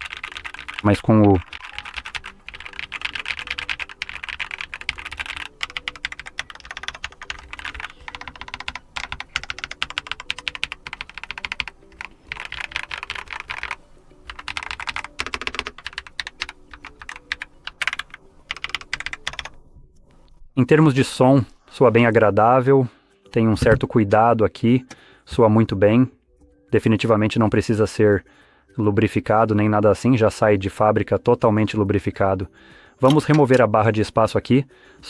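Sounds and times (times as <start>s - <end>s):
mechanical keyboard typing: 0.0s - 19.6s.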